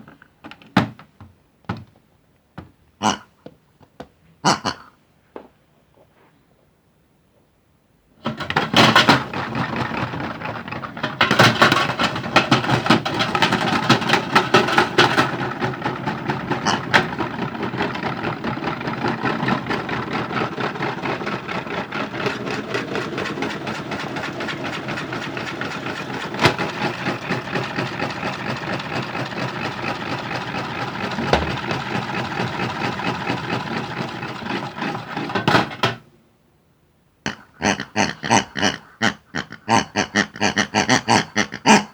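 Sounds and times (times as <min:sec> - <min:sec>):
hard objects rattling in drum: 0:08.2 - 0:36.0
toy washing machine running: 0:08.2 - 0:36.0.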